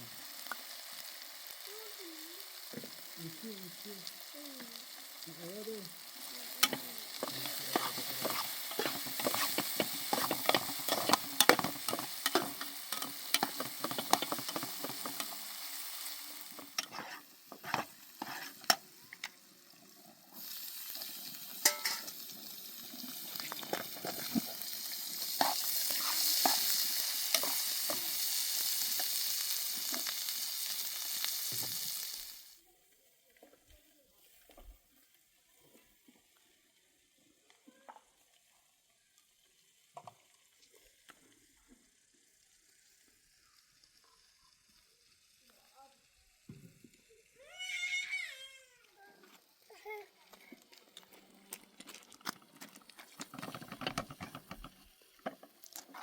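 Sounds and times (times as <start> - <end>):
food sizzling in a pan: 0.0 - 56.0
utensil scraping a pan: 6.4 - 18.8, 21.0 - 22.2, 23.3 - 28.2, 53.0 - 55.4.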